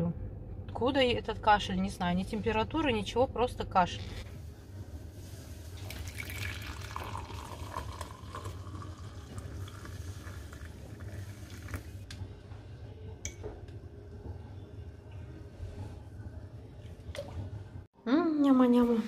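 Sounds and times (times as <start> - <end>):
liquid pouring into container: 5.6 - 12.0.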